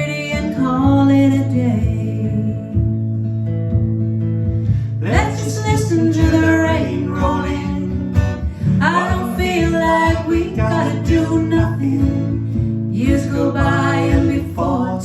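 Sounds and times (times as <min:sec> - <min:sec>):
acoustic guitar: 0:00.0 - 0:15.0
person singing: 0:05.0 - 0:08.1, 0:08.7 - 0:15.0.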